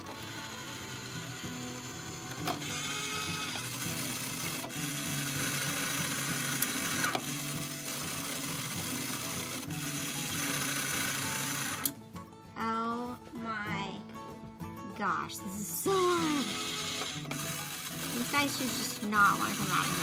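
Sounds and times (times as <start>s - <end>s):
small electric motor whirring: 0.0s - 12.0s, 16.0s - 20.0s.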